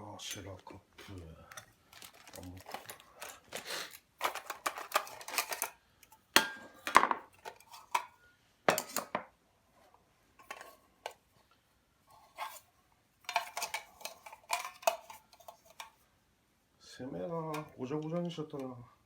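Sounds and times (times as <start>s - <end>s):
metal cookware clinking: 8.7s - 9.2s, 13.3s - 15.9s.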